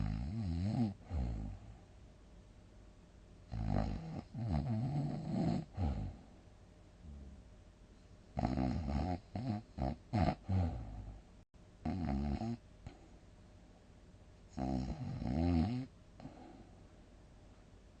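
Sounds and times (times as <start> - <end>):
person snoring heavily: 0.0 - 1.7, 3.5 - 6.2, 8.4 - 11.2, 14.6 - 16.4.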